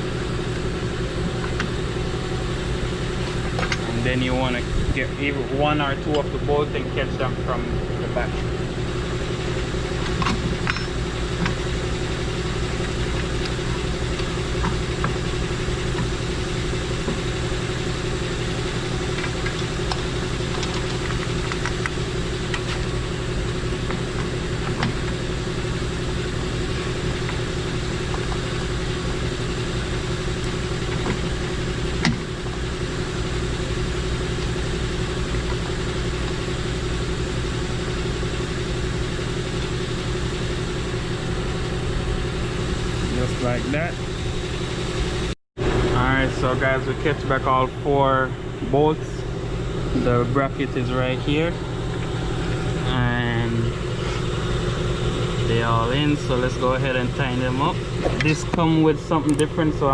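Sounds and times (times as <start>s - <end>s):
steady motor hum: 0.0s - 59.9s.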